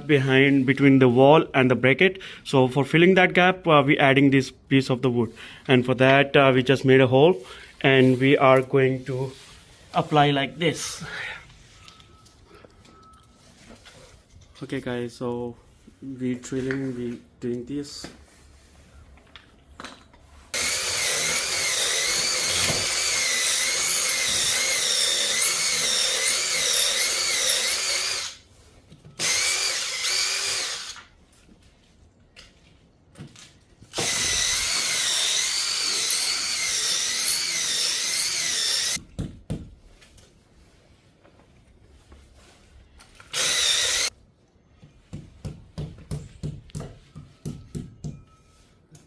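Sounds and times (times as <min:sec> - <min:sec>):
power drill boring into concrete: 0:20.5 - 0:28.4, 0:29.2 - 0:31.1, 0:33.9 - 0:39.0, 0:43.3 - 0:44.1.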